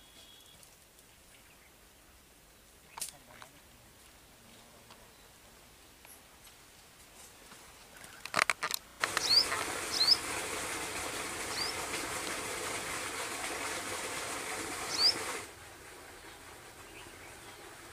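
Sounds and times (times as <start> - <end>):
quick clicks: 8.3 - 9.6
steady hiss: 8.9 - 15.6
small bird chirping: 9.2 - 10.2, 14.9 - 15.2.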